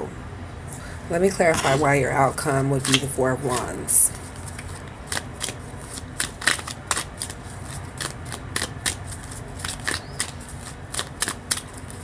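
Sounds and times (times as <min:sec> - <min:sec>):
cards shuffling and snapping: 0:04.3 - 0:12.0.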